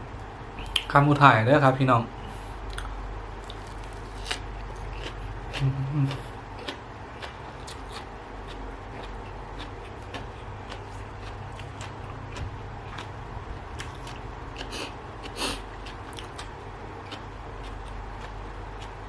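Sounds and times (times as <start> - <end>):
chewing clicks and crunches: 2.7 - 19.0
low hum of voice: 5.6 - 6.3.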